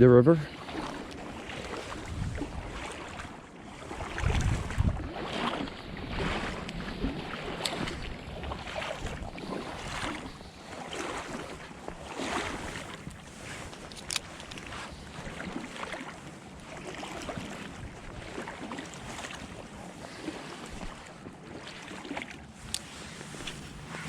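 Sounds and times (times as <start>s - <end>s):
water splashing from wading: 0.5s - 24.0s
wind buffeting microphone: 0.8s - 10.7s.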